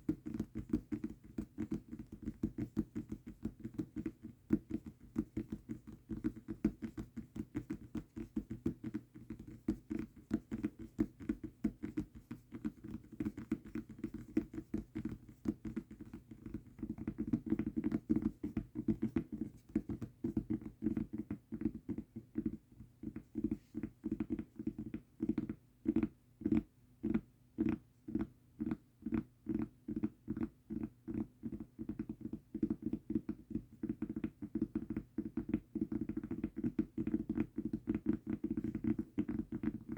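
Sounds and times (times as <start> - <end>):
fingers tapping on a mousepad: 0.0 - 39.9.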